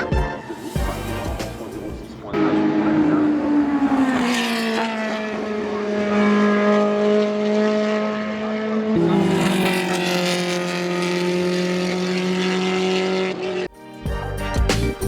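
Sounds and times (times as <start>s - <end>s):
racing car engine: 0.0s - 13.7s.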